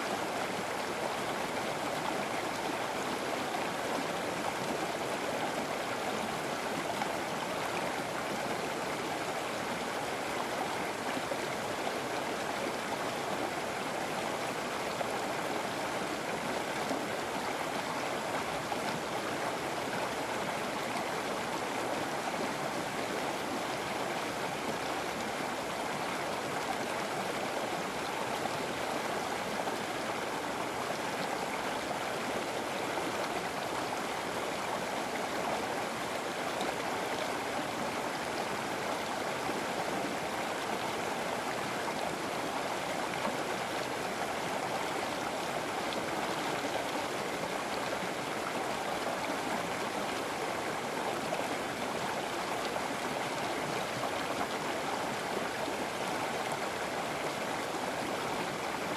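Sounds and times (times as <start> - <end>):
river water flowing over rocks: 0.0 - 58.9.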